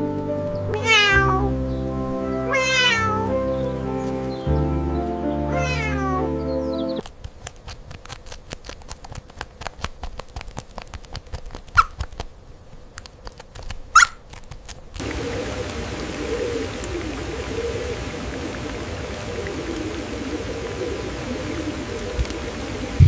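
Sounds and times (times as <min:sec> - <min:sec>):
background music: 0:00.0 - 0:07.0
cat meowing: 0:00.7 - 0:01.6, 0:02.4 - 0:03.3, 0:05.5 - 0:06.3
faint crackle of small clicks: 0:07.0 - 0:17.0, 0:21.9 - 0:22.5.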